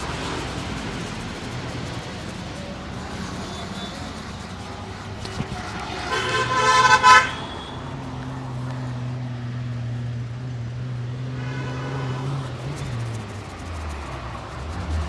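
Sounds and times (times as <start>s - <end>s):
road traffic hum: 0.0s - 15.0s
vehicle horn honking: 5.7s - 8.0s, 11.3s - 12.8s.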